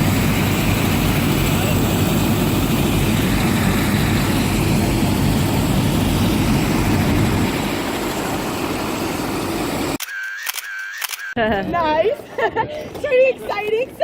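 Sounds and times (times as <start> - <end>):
helicopter engine and rotor: 0.0 - 11.2.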